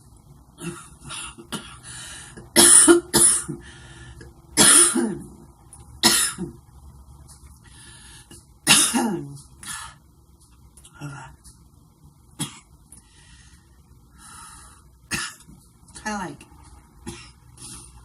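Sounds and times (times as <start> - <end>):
woman coughing: 2.5 - 3.6, 4.6 - 5.4, 6.0 - 6.6, 8.7 - 9.4
woman clearing throat: 4.6 - 5.4.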